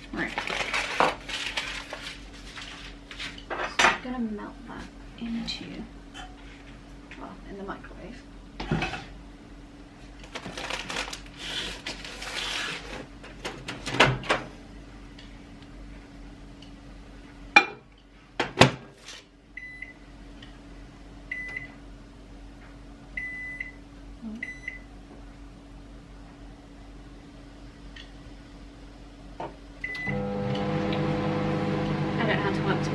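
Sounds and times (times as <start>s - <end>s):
microwave low hum: 0.0s - 32.9s
rustling and clatter: 0.3s - 3.4s.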